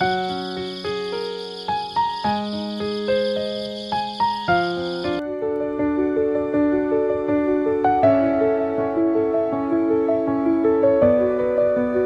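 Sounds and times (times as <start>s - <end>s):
soft keyboard music: 0.0s - 12.0s.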